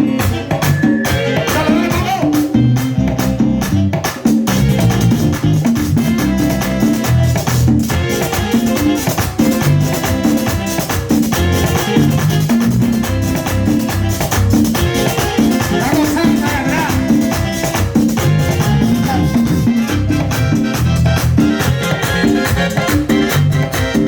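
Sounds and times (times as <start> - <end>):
drums: 0.0 - 24.0
live band playing merengue: 0.0 - 24.0.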